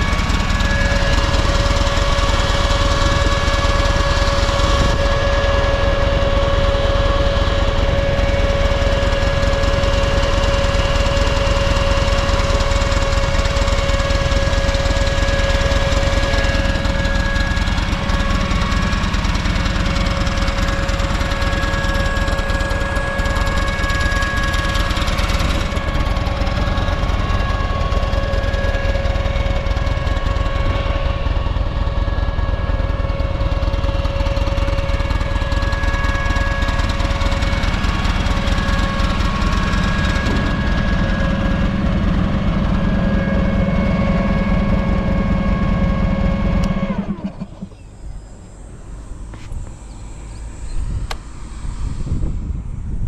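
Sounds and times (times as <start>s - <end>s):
motorcycle engine idling: 0.0s - 51.5s.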